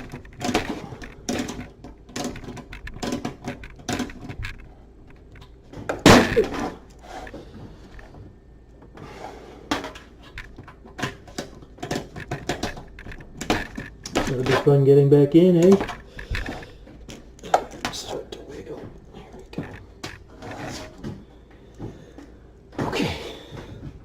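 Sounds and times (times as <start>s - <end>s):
metal knocks and clatter: 0.0s - 6.8s, 9.7s - 14.8s.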